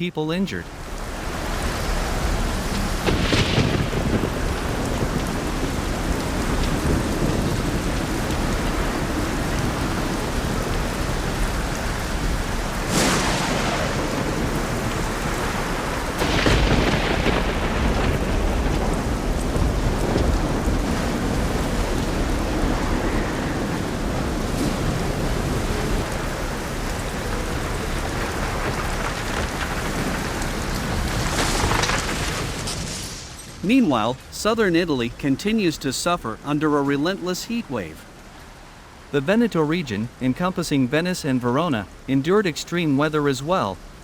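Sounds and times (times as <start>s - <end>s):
heavy rain: 0.0s - 44.0s
thunder cracks: 3.0s - 9.3s, 12.8s - 26.1s.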